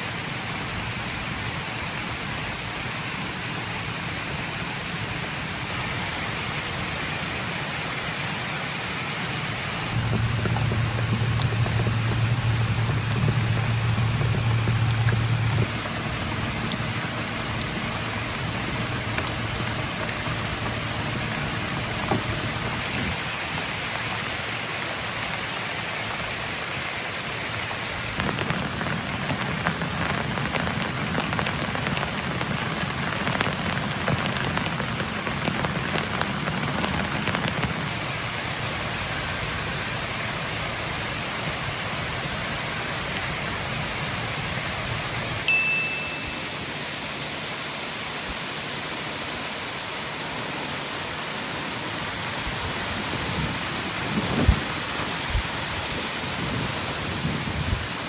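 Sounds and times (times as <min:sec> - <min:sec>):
rain falling: 0:00.0 - 0:58.0.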